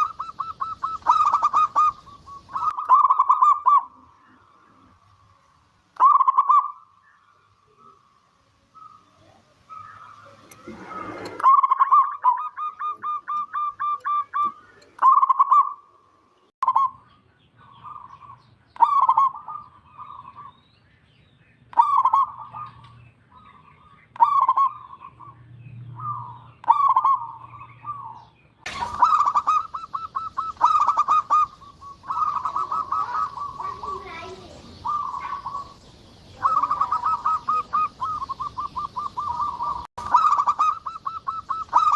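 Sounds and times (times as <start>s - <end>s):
dove cooing: 0.0s - 5.0s, 6.0s - 6.8s, 8.7s - 15.8s, 21.7s - 23.0s, 26.0s - 41.9s
background noise: 0.0s - 41.9s.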